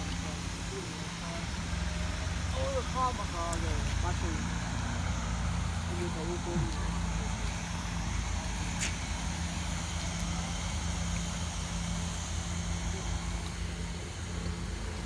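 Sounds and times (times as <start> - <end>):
machine humming: 0.0 - 15.0.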